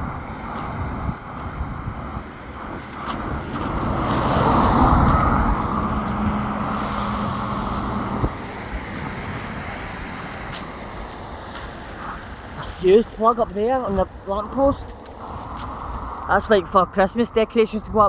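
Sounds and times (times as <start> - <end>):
car passing by: 0.0 - 16.6.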